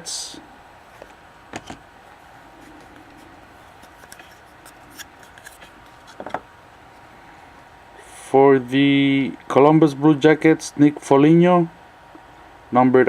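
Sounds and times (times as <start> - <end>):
trading cards rustling: 2.5 - 6.3.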